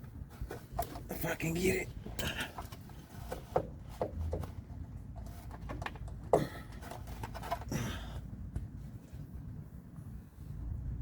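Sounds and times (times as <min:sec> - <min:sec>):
wiring knocking and rubbing: 0:02.0 - 0:07.7.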